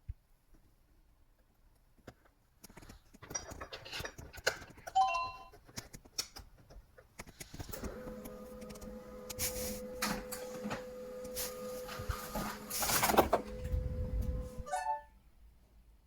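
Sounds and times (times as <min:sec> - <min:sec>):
printer clicking and rattling: 0:07.6 - 0:14.6.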